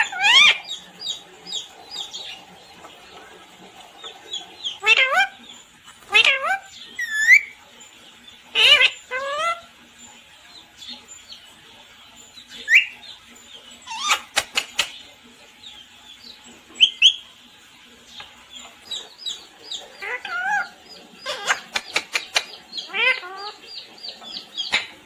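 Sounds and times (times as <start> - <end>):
parrot chirps: 0.0 - 1.6, 6.0 - 7.6, 8.5 - 9.7, 13.8 - 15.0, 20.0 - 23.8
parrot calling: 0.0 - 2.8, 4.4 - 7.6, 8.5 - 9.7, 13.8 - 14.6, 18.8 - 25.0.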